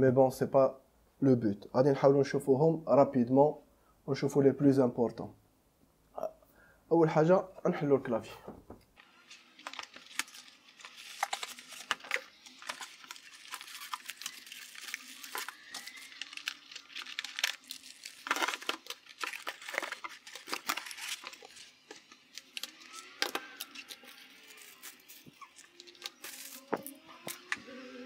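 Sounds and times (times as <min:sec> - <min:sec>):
plastic wrapping crinkling: 0:09.0 - 0:27.9.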